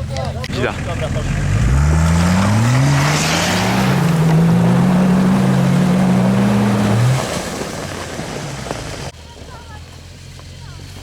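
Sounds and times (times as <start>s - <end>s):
engine revving hard: 0.6s - 7.5s
splashing through mud and water: 1.4s - 9.2s.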